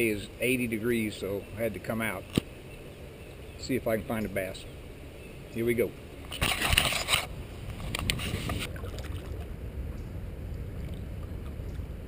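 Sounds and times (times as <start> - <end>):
low steady water rush: 0.0 - 12.0
paddle splashing water: 8.2 - 9.6.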